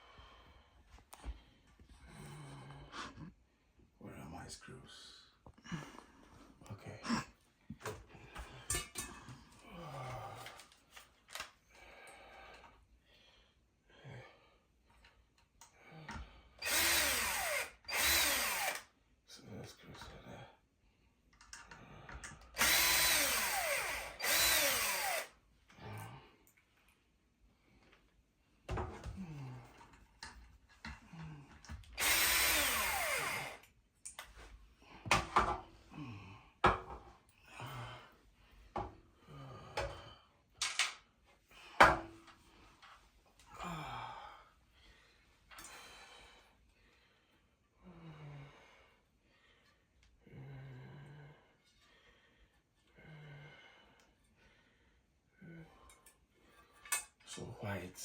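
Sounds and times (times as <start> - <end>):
power drill driving screws: 16.6 - 18.9, 22.5 - 25.3, 31.8 - 33.7.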